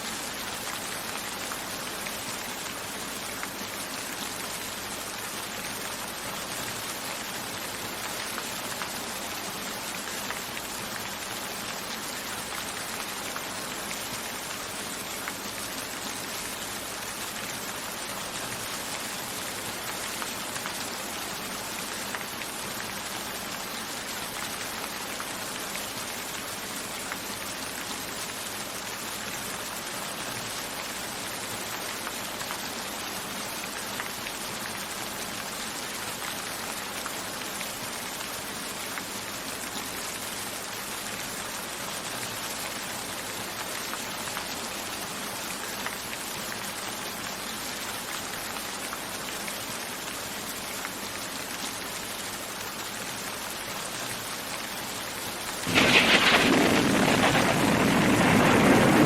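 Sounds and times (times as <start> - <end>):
steady rain falling: 0.0 - 59.0
raindrops landing: 55.5 - 59.0.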